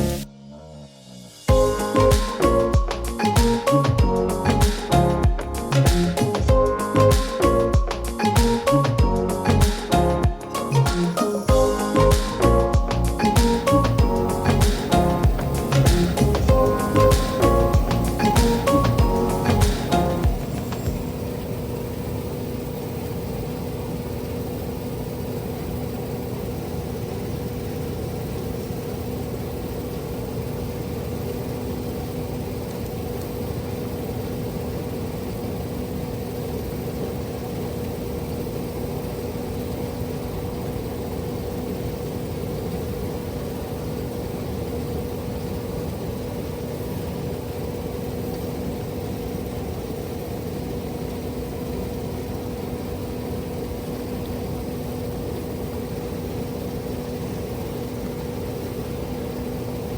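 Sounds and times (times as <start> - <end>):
engine hum: 8.8 - 21.8.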